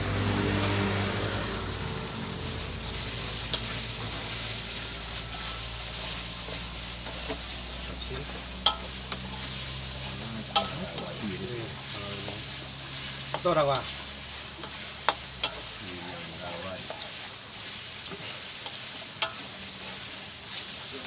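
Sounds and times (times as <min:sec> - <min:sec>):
low hum: 0:00.0 - 0:15.7
food sizzling in hot oil: 0:00.0 - 0:21.0
scraping ticks in pan: 0:02.2 - 0:21.0.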